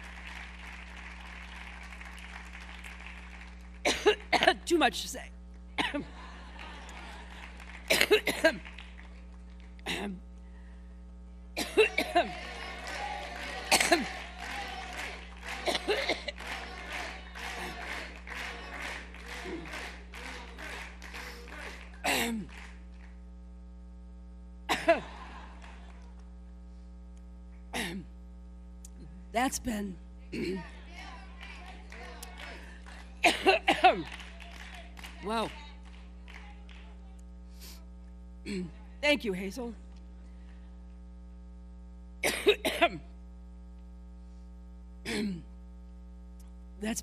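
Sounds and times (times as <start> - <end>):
mains hum: 0.0 - 47.0
woman coughing: 3.9 - 4.8, 5.8 - 6.1, 7.9 - 8.6, 9.9 - 10.2, 11.6 - 12.4, 13.6 - 14.2, 15.6 - 16.6, 22.0 - 22.5, 24.7 - 25.1, 27.8 - 28.1, 30.4 - 30.8, 33.2 - 34.1, 38.5 - 38.8, 42.2 - 43.1, 45.1 - 45.5
woman speaking: 4.4 - 5.4, 29.4 - 32.7, 35.1 - 37.2, 38.5 - 39.8
crowd noise: 11.6 - 22.6, 30.3 - 37.2.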